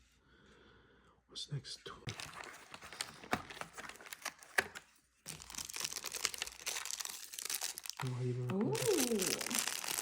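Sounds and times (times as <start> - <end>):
packaging crinkling: 2.1 - 10.0.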